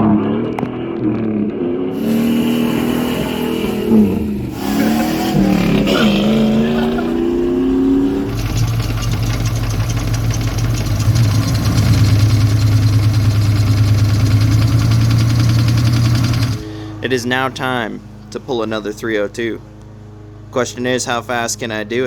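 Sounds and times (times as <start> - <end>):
engine revving: 1.9 - 17.0.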